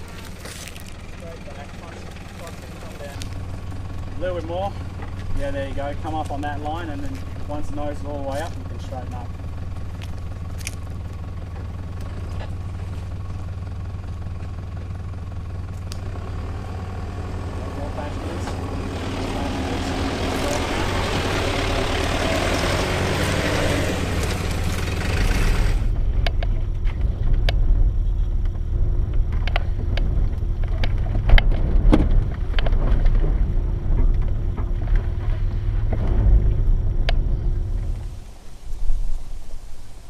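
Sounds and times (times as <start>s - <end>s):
diesel engine running at low revs: 0.0s - 40.0s
vehicle body knocks and rattles: 29.1s - 37.9s.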